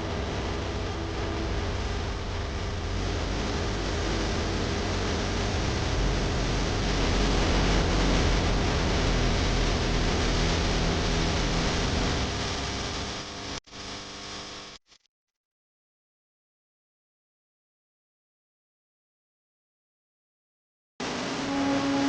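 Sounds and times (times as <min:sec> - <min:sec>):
dense rushing noise: 0:00.0 - 0:12.7
deep rumble: 0:00.0 - 0:12.8.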